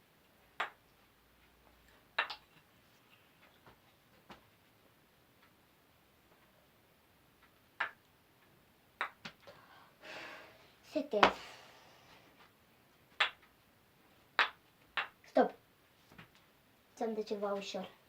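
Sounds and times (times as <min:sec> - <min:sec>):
wooden kendama ball clicking: 0:00.6 - 0:00.8, 0:02.2 - 0:02.6, 0:07.8 - 0:08.0, 0:09.0 - 0:09.4, 0:13.2 - 0:13.4, 0:14.4 - 0:15.2.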